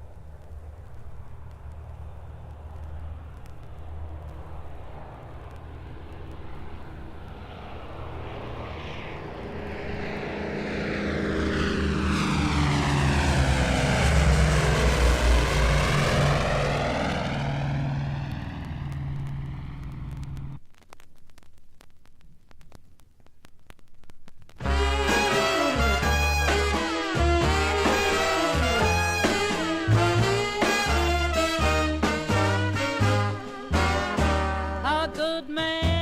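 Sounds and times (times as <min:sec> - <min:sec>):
vinyl clicks and crackle: 0:00.0 - 0:07.6, 0:18.2 - 0:24.6
propeller bomber engine drone: 0:00.0 - 0:20.6, 0:24.6 - 0:34.9.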